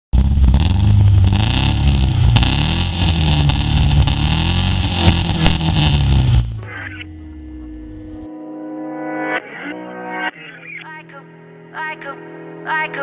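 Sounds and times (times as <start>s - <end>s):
car engine revving: 0.1s - 8.3s.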